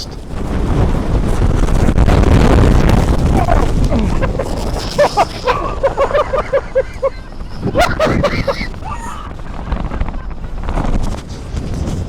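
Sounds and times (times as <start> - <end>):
wind buffeting microphone: 0.0 - 12.0
person crying out: 3.3 - 9.5.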